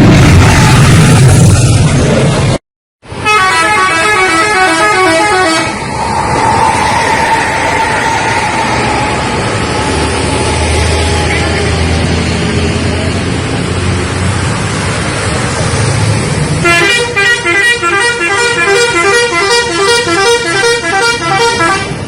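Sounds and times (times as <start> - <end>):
bus engine rumble: 0.0 - 22.0
multi-tone bus horn melody: 3.1 - 5.8, 16.6 - 22.0.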